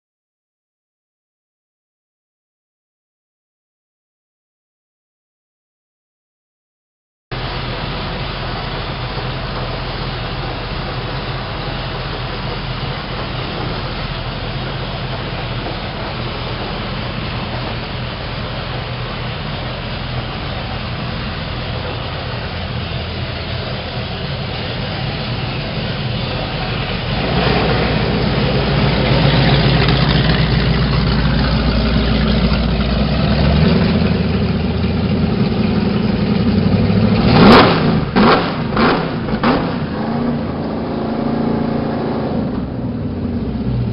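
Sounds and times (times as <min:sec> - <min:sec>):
engine throttle blips: 0:07.3 - 0:43.9
marine engines idling: 0:07.4 - 0:37.2.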